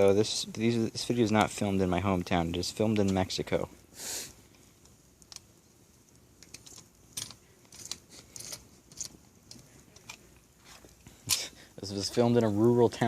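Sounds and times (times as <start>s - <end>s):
wood fire crackling and popping: 0.0s - 13.0s.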